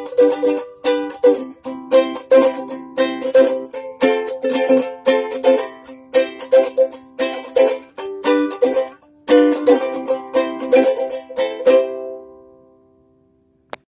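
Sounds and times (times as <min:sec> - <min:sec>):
ukulele strumming chords: 0:00.0 - 0:13.2.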